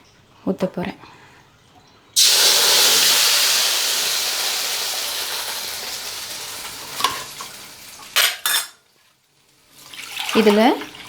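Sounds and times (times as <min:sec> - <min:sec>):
batter sizzling in hot oil: 0:02.2 - 0:08.6.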